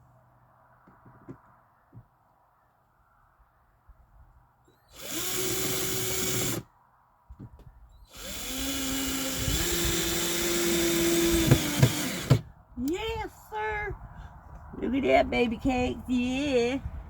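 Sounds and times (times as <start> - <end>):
drill driving screws into wood: 4.9 - 6.7, 8.1 - 12.5.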